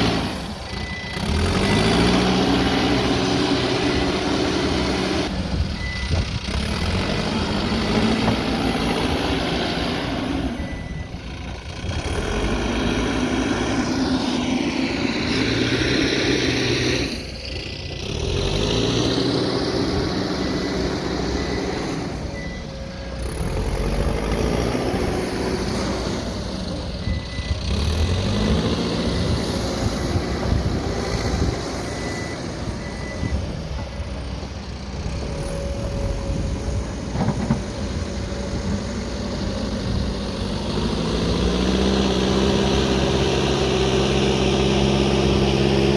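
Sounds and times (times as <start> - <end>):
backhoe diesel engine revving: 0.0 - 45.9
reversing alarm beeping: 0.1 - 6.2, 8.5 - 11.3, 19.0 - 23.2, 27.0 - 34.2.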